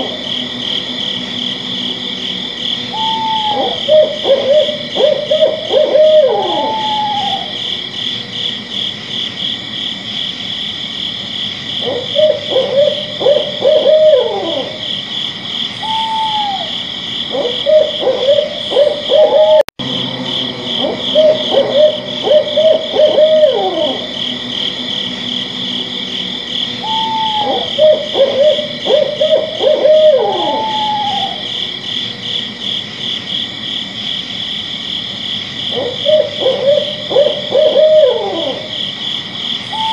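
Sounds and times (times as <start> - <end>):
owl hooting: 0.0 - 8.7, 11.8 - 19.7, 20.4 - 32.9, 35.6 - 39.0, 39.6 - 39.9
night insects chorus: 0.0 - 39.9.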